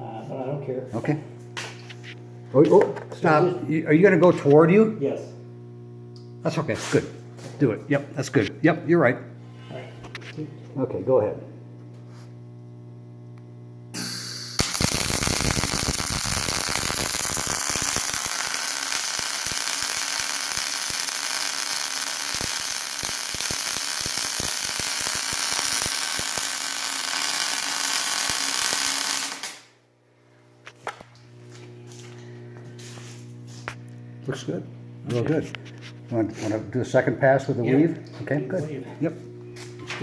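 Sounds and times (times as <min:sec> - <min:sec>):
arc welder crackling hiss: 0:13.9 - 0:29.8.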